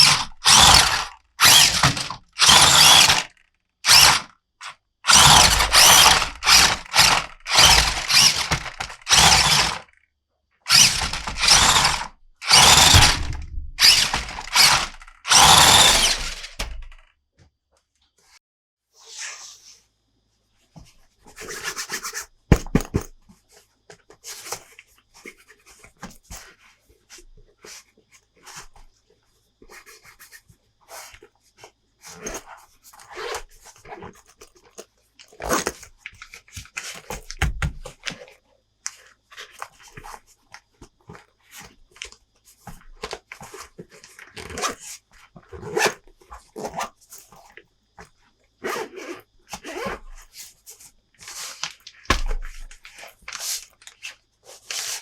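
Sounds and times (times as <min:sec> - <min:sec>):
plastic toy parts clicking: 0:00.0 - 0:09.9, 0:10.7 - 0:17.0.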